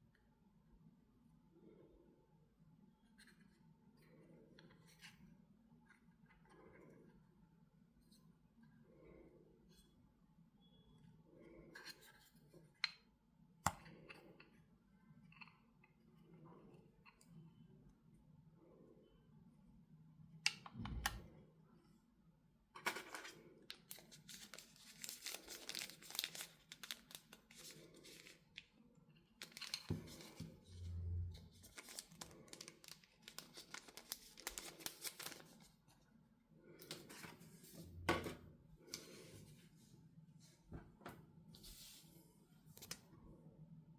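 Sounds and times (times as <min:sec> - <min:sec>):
packaging tearing and crinkling: 0:23.9 - 0:28.4, 0:31.6 - 0:35.6.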